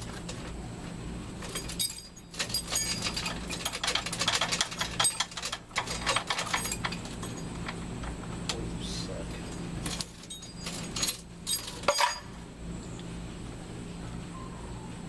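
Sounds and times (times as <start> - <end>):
steady low hum: 0.0 - 15.0
metal chain rattling: 1.4 - 8.1, 9.4 - 12.4.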